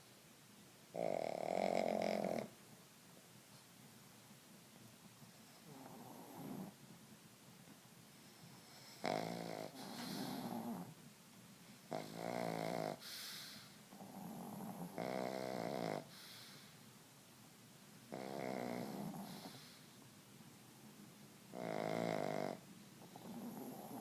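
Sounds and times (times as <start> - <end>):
dog snoring: 0.9 - 2.5, 5.5 - 6.8, 8.5 - 11.0, 11.9 - 16.6, 18.1 - 19.8, 21.5 - 24.0
soft dog breaths: 8.0 - 17.0, 18.1 - 20.1.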